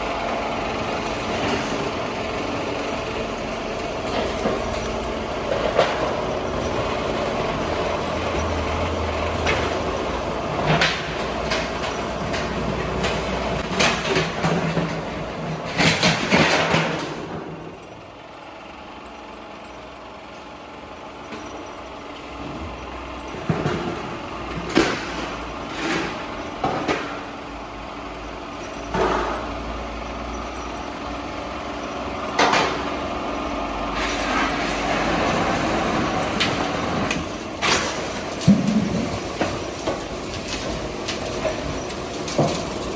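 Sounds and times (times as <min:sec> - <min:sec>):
metal clanks and bangs: 0:08.0 - 0:17.8.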